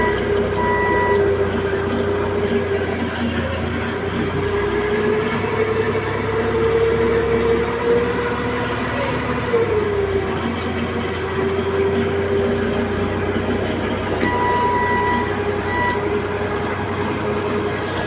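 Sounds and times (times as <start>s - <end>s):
high beep: 0.0s - 1.3s, 14.2s - 16.1s
diesel engine running: 0.0s - 18.0s
engine whine: 0.0s - 18.0s.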